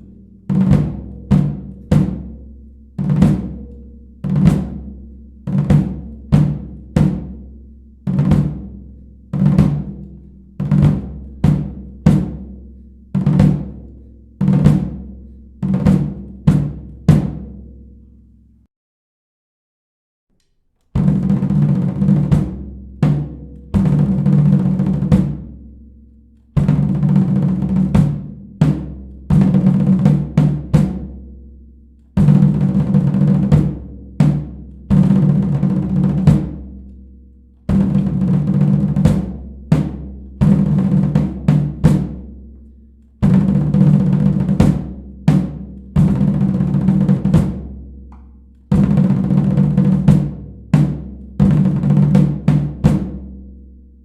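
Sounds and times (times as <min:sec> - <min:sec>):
bass drum beats: 0:00.0 - 0:17.9, 0:21.0 - 0:25.8, 0:26.6 - 0:31.5, 0:32.2 - 0:36.8, 0:37.7 - 0:42.5, 0:43.2 - 0:54.0.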